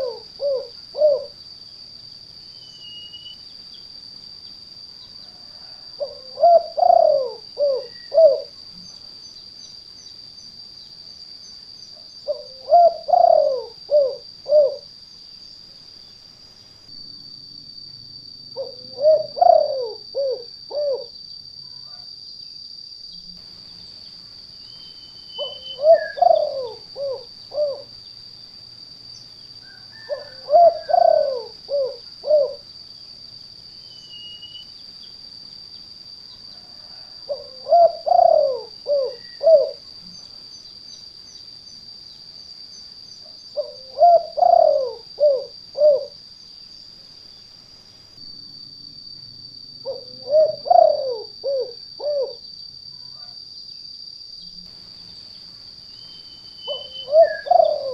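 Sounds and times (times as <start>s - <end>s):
dove cooing: 0.0s - 1.4s, 5.4s - 8.6s, 12.2s - 14.9s, 18.6s - 21.1s, 25.4s - 27.9s, 29.7s - 32.7s, 36.7s - 39.8s, 43.5s - 46.2s, 49.8s - 52.4s, 56.6s - 57.9s
steady high-pitched hum: 0.0s - 57.9s.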